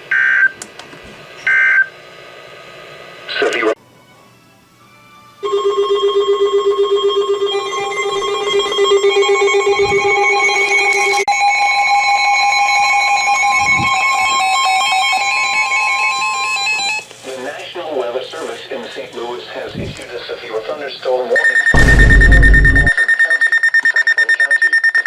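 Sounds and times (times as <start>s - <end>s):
stepping higher tones: 21.8s - 22.9s
pulsing low electronic tone: 21.8s - 23.0s
steady higher tone: 21.8s - 23.0s.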